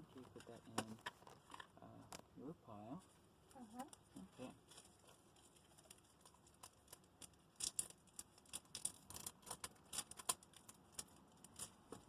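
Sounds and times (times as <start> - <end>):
foil wrapper crinkling: 3.6 - 12.0.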